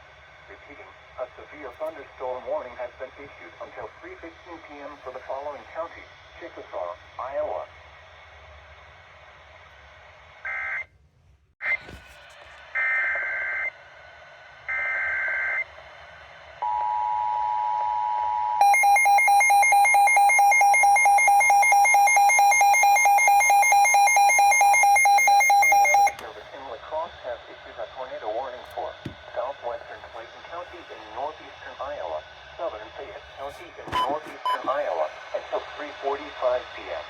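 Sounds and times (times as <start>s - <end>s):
pulsing electronic alarm beep: 16.6s - 26.2s, 33.9s - 34.7s
two-tone attention signal: 18.6s - 26.2s, 33.9s - 34.7s.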